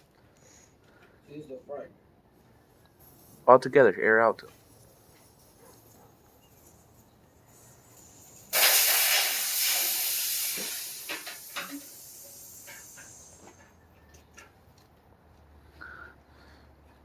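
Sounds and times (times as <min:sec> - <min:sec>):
loud hiss of air venting: 0:06.5 - 0:13.8.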